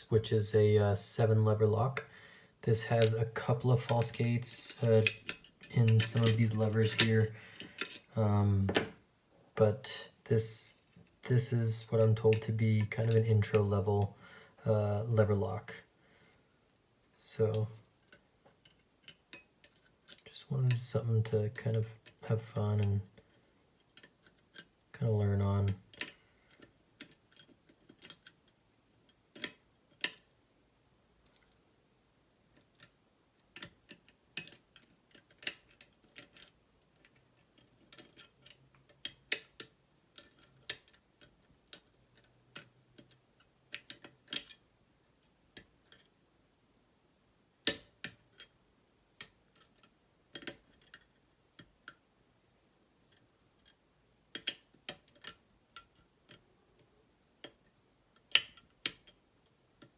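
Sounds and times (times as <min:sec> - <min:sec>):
lock picking tools clicking: 0:04.8 - 0:08.1, 0:25.9 - 0:28.4, 0:29.3 - 0:30.3, 0:32.6 - 0:44.6, 0:47.6 - 0:48.5, 0:49.2 - 0:52.0, 0:53.6 - 0:56.4, 0:58.2 - 0:59.2.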